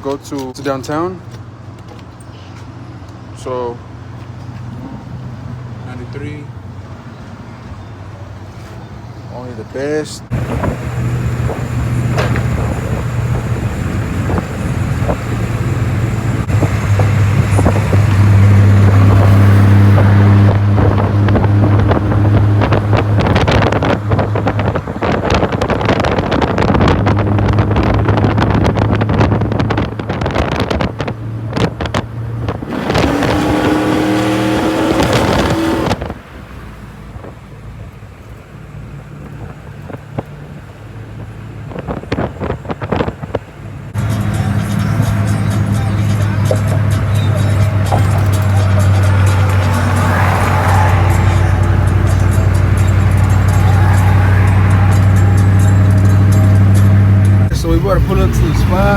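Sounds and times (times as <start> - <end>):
road noise: 0.0 - 58.9
wind noise: 10.3 - 36.4, 41.2 - 58.9
truck engine running: 10.3 - 41.6, 42.6 - 58.9.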